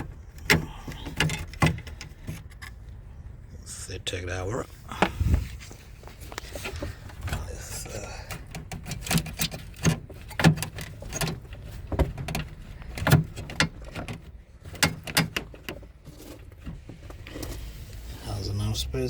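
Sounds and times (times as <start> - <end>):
hand tools clicking and knocking: 0.0 - 2.8, 6.7 - 16.8.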